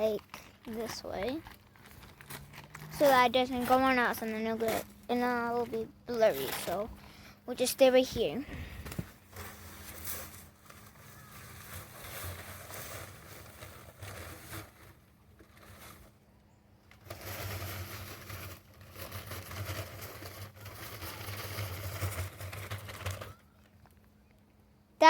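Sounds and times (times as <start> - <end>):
cement mixer motor humming: 16.9 - 23.7.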